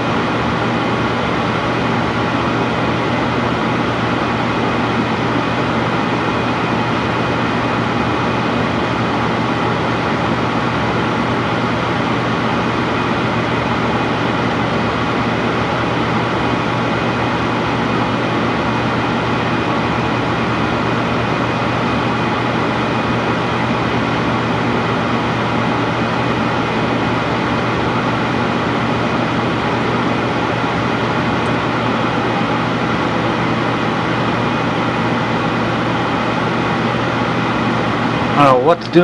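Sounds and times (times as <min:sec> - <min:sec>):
furnace running: 0:00.0 - 0:39.0.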